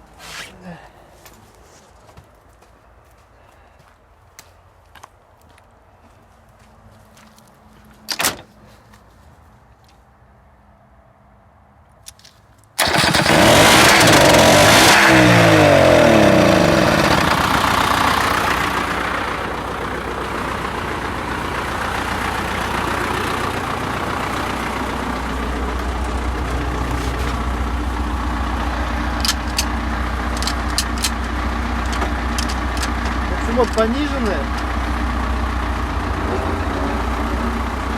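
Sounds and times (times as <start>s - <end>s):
diesel tractor engine: 12.8s - 37.9s.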